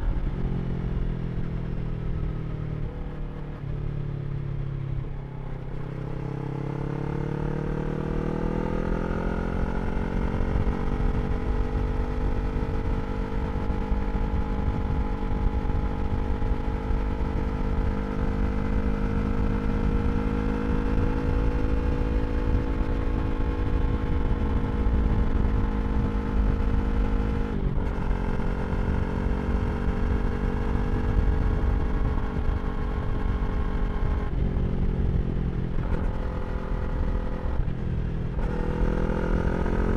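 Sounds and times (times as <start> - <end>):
motorcycle engine revving: 5.7 - 39.9
wind rumble: 19.4 - 39.8.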